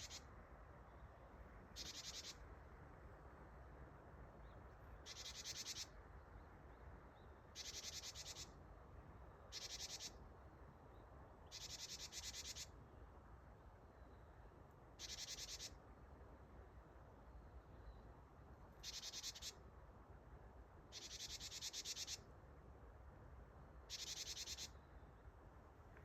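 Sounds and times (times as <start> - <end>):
bird giving buzzy rattling call: 18.8 - 19.6, 20.9 - 22.2, 23.9 - 24.7.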